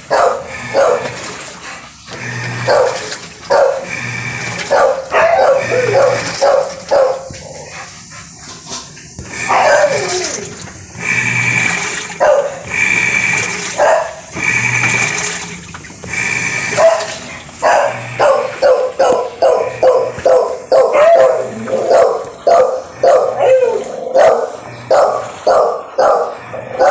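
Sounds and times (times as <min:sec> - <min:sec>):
dog barking and yelping: 0:00.0 - 0:01.3, 0:02.5 - 0:07.7, 0:09.4 - 0:10.6, 0:12.2 - 0:12.6, 0:13.8 - 0:14.2, 0:16.7 - 0:26.9.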